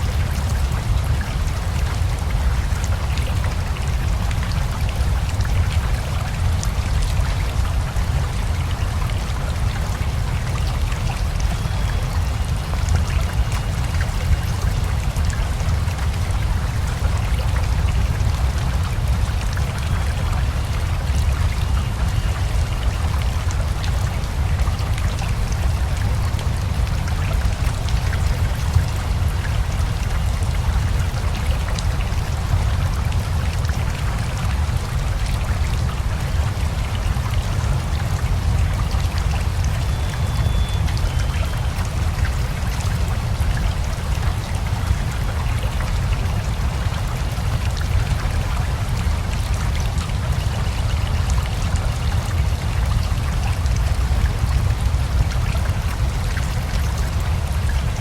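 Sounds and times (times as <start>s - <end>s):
rain patter: 0.0s - 58.0s.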